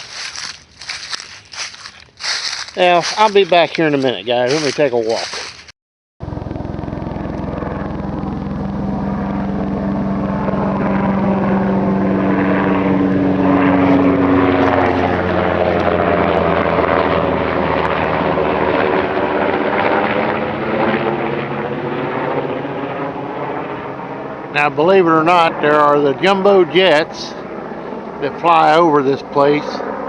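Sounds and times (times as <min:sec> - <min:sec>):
low-flying aircraft engine drone: 0:00.0 - 0:30.0.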